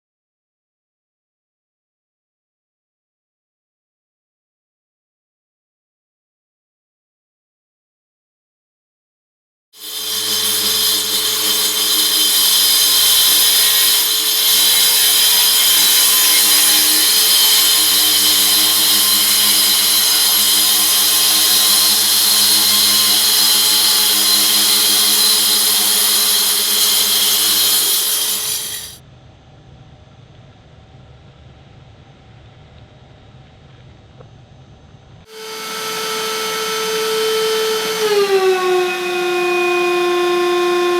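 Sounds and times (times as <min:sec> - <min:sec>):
vacuum cleaner running: 0:09.8 - 0:29.0, 0:35.3 - 0:40.9.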